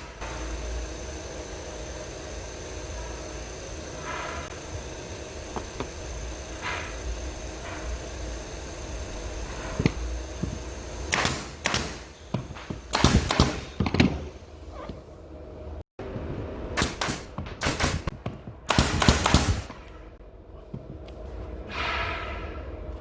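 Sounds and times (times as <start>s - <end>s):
steady low hum: 0.0s - 23.0s
nail gun firing into wood: 11.1s - 14.2s, 16.8s - 19.8s.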